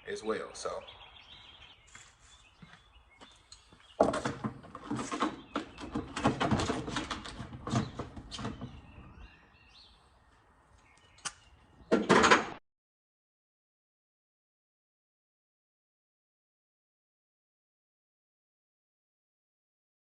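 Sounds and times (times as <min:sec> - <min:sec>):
hard objects clattering and rattling: 0:04.0 - 0:08.8
sharp click: 0:11.2 - 0:11.4.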